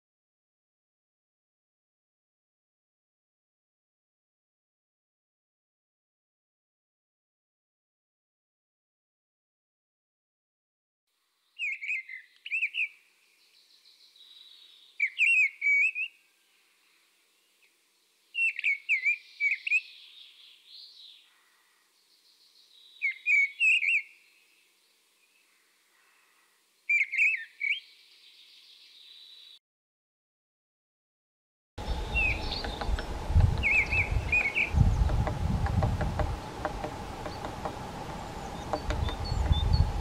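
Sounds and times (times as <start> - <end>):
faint high bird sounds: 11.2 - 29.6, 31.8 - 40.0
bird whistling calls: 11.6 - 13.0, 15.0 - 16.2, 18.4 - 20.0, 23.0 - 24.2, 26.9 - 27.9, 32.0 - 35.2, 38.3 - 40.0.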